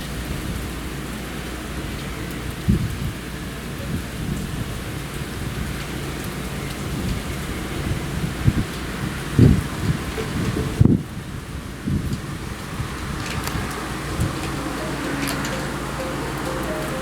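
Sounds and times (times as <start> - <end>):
heavy rain falling: 11.2 - 17.0.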